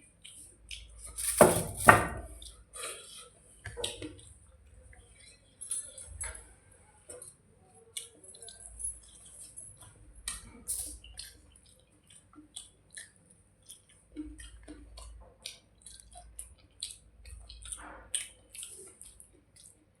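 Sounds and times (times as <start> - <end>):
wet chewing and mouth smacks: 11.1 - 19.9.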